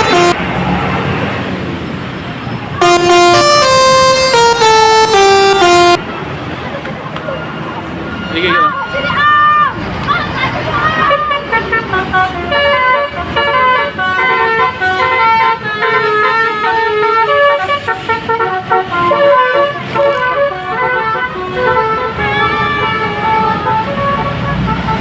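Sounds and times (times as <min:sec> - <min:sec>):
musical air horns playing tune: 0:00.0 - 0:00.4, 0:02.8 - 0:06.1, 0:11.3 - 0:25.0.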